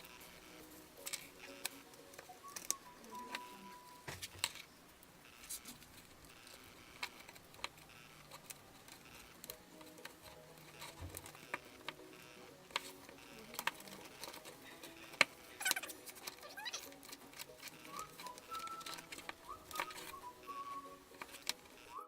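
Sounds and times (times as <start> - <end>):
paper being handled: 12.7 - 21.8.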